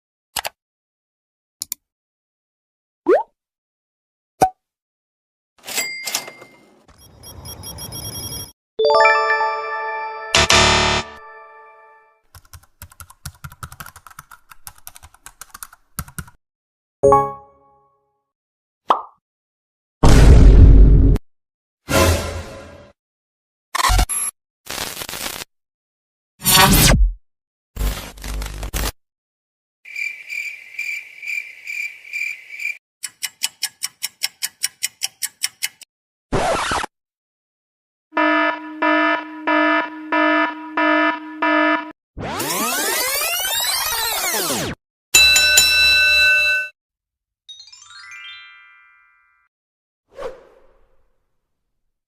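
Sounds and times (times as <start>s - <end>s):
keyboard typing: 12.3s - 16.4s
cricket chirping: 29.9s - 32.8s.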